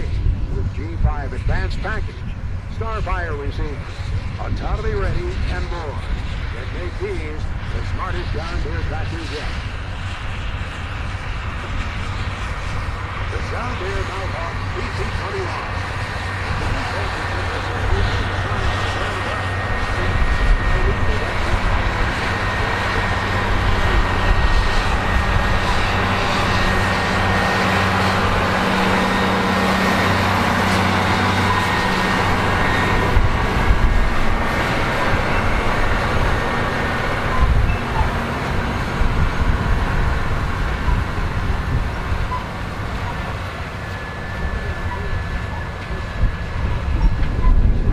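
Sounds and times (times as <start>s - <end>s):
gusty rumble: 0.0s - 47.9s
tractor diesel engine running: 0.0s - 47.9s.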